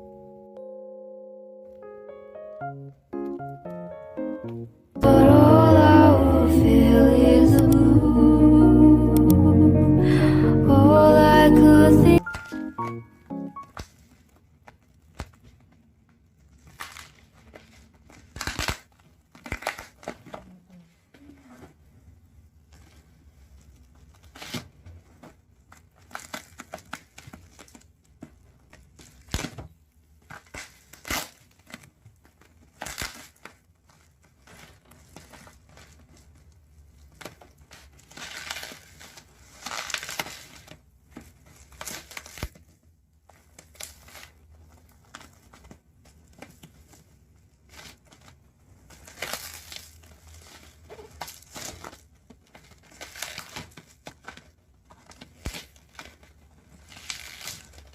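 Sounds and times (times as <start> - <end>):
packaging crinkling and tearing: 13.8 - 20.5, 22.7 - 57.9.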